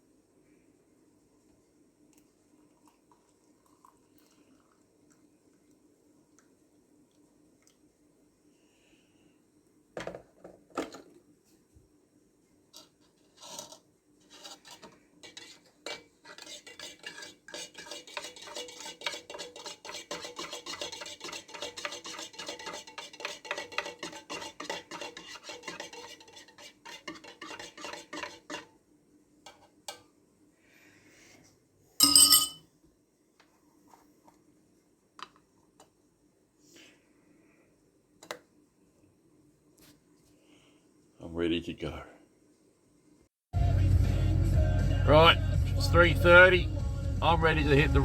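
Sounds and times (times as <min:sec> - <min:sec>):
teaspoon clinking in a mug: 0:32.0 - 0:32.6.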